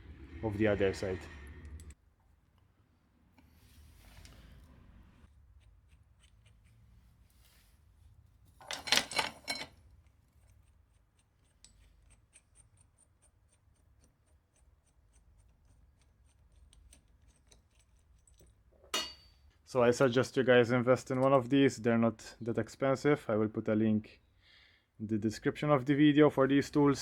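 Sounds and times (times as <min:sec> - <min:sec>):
metal tool strokes clattering: 0:08.6 - 0:09.7, 0:17.6 - 0:19.4.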